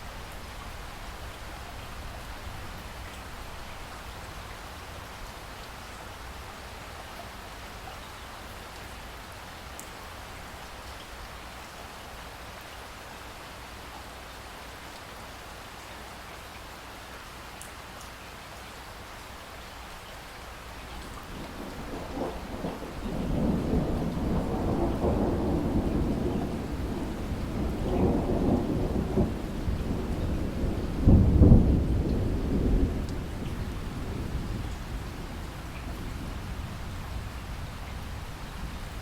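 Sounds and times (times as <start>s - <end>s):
steady rain: 0.0s - 39.0s
thunder rumbling: 21.0s - 39.0s.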